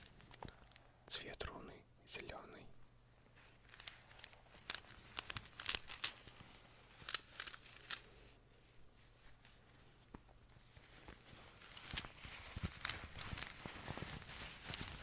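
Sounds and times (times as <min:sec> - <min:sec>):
stones clicking: 0:03.7 - 0:08.1.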